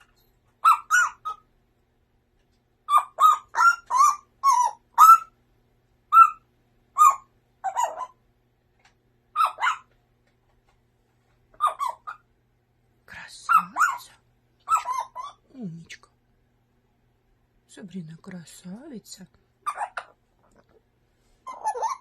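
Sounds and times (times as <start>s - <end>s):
parrot calling: 0.0s - 1.5s, 2.8s - 5.4s, 6.1s - 8.2s, 9.3s - 9.9s, 11.5s - 12.3s, 13.5s - 15.5s, 19.6s - 20.2s, 21.4s - 22.0s.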